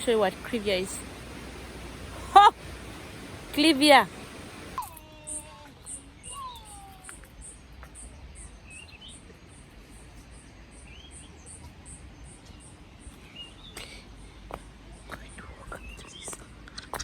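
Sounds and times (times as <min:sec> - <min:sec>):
insect chirping: 0:00.0 - 0:04.8.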